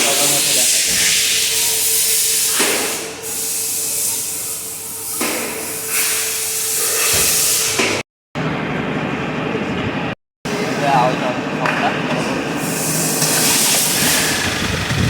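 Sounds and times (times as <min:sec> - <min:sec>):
loud hiss: 0:12.6 - 0:15.0.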